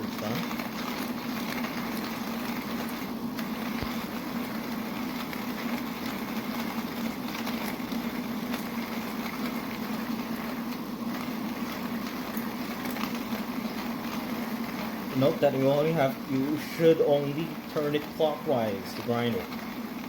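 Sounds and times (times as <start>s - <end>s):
manual coffee grinder grinding: 0.0s - 20.0s.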